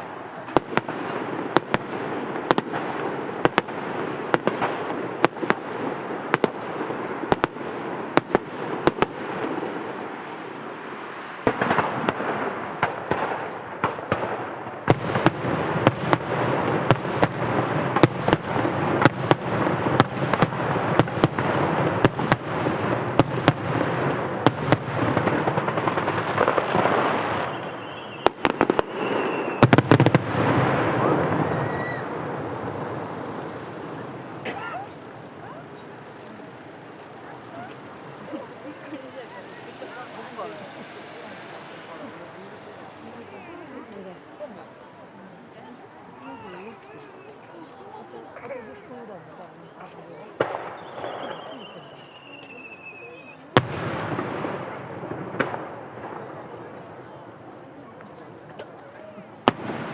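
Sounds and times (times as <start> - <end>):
rumble of firework bursts: 0.0 - 45.9, 50.4 - 59.9
aerial fireworks bangs and crackles: 0.0 - 48.2, 49.2 - 59.9.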